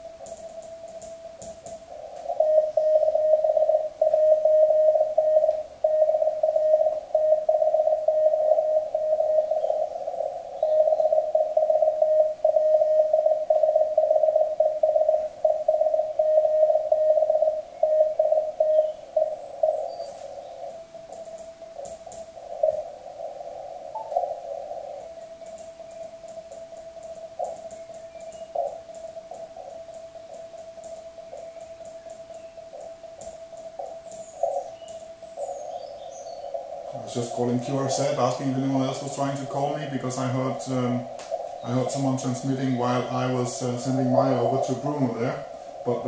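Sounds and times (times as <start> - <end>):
morse code tone keyed on and off: 0.0 - 23.0
radio band hiss: 0.0 - 46.0
thin steady tone: 0.0 - 46.0.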